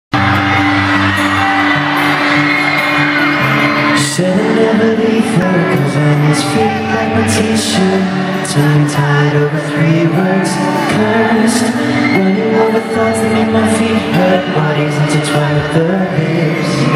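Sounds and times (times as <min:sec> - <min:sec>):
live pop band with singing: 0:00.2 - 0:16.9.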